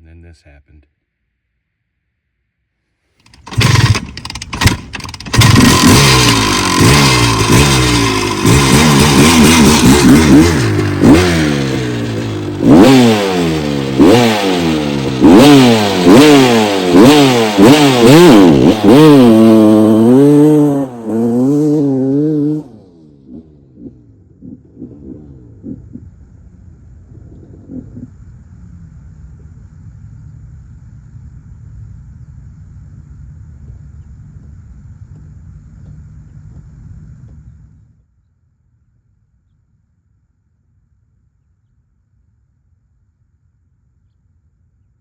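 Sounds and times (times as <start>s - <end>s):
dirt bike engine revving: 3.2s - 26.6s.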